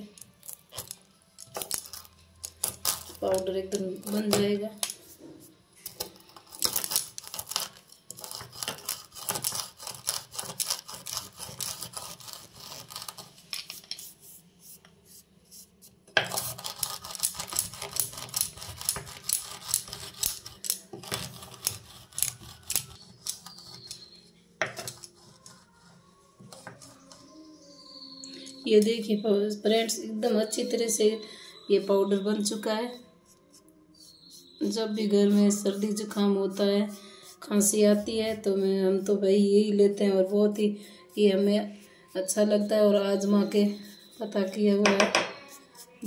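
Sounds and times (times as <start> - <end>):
rolling pin crushing peppercorns: 0.0 - 5.0, 5.8 - 14.1, 16.1 - 25.7.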